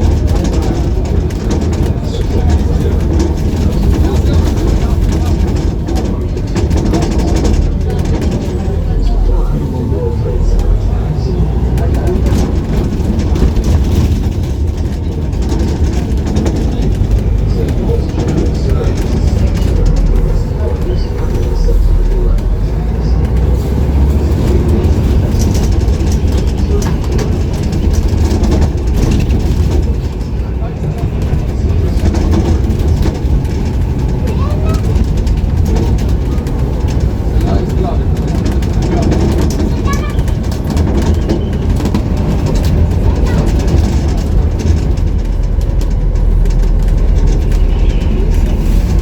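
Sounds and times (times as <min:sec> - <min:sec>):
bus engine rumble: 0:00.0 - 0:49.0
city street traffic: 0:00.0 - 0:49.0
rattles and knocks: 0:00.0 - 0:49.0.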